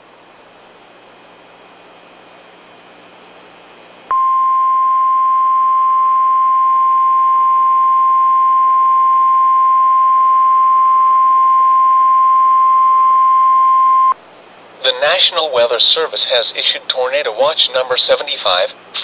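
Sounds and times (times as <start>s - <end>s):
high steady warning alarm tone: 4.1s - 14.2s.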